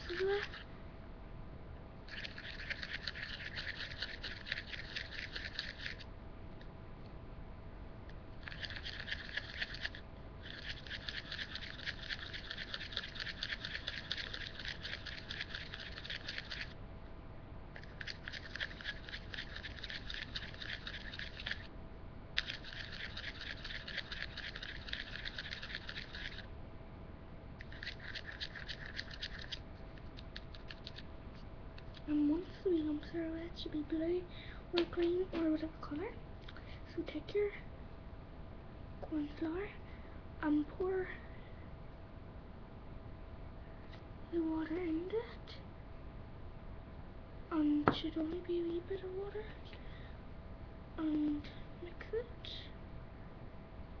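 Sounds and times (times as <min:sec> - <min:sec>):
paint being stirred in container: 0:02.1 - 0:06.0, 0:08.4 - 0:16.7, 0:17.8 - 0:21.7, 0:22.4 - 0:26.5, 0:27.6 - 0:29.6.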